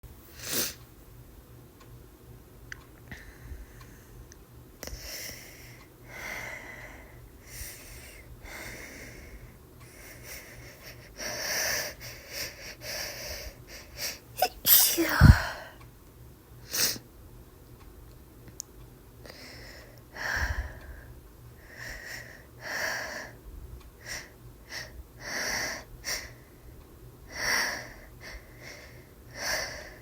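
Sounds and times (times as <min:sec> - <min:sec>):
woman sneezing: 0:14.4 - 0:15.6.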